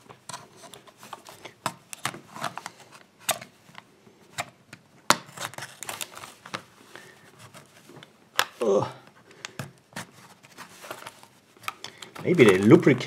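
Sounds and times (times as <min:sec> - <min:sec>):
plastic packaging crackling: 0:05.2 - 0:08.6, 0:10.1 - 0:13.0.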